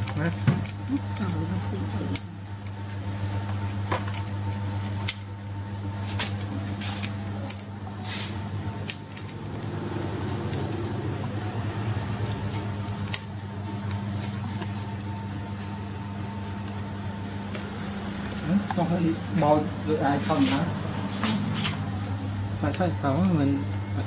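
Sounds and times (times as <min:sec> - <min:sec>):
sharp clicks and crackles: 0:00.0 - 0:05.4, 0:06.1 - 0:07.8, 0:08.8 - 0:17.6
low mechanical hum: 0:00.0 - 0:24.0.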